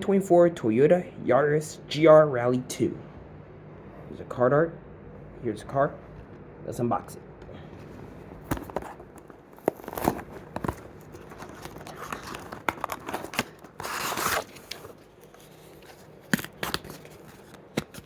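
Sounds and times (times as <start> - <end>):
plastic blister crinkling: 8.5 - 18.0
cardboard tearing: 8.7 - 18.0.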